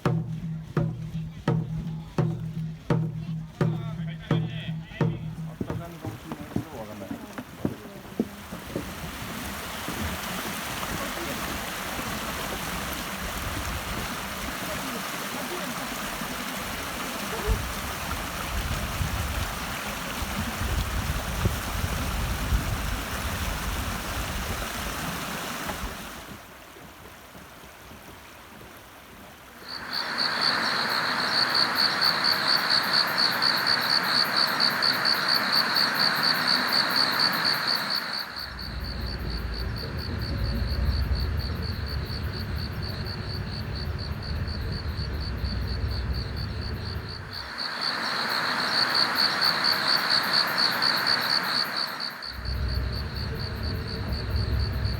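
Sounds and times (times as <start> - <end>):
insects chirping: 0.0 - 26.3, 29.4 - 54.9
low rumble: 38.5 - 47.4, 52.4 - 54.9
rushing noise: 52.3 - 54.9.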